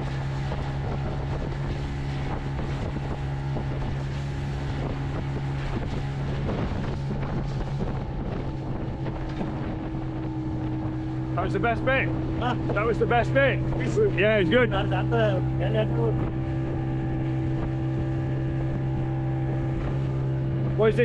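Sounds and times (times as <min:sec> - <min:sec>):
boat motor running: 0:00.0 - 0:21.0
wind on microphone: 0:00.0 - 0:21.0.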